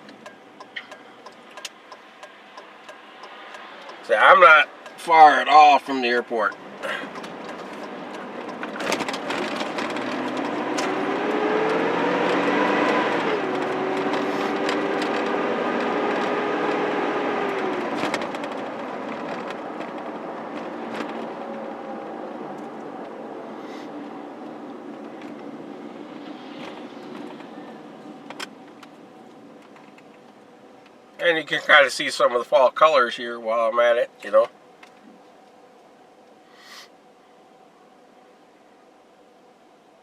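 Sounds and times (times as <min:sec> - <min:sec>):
car engine accelerating: 0:00.0 - 0:31.7
road noise: 0:00.0 - 0:40.0.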